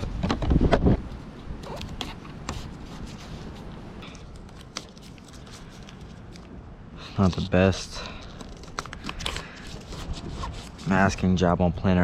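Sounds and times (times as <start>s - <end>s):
masking tape crackling: 1.6s - 6.5s.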